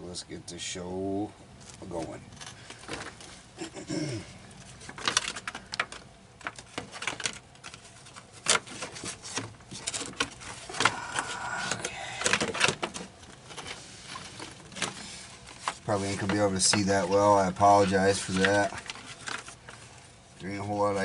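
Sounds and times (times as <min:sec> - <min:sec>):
plastic panels clicking and rattling: 0:04.8 - 0:19.9.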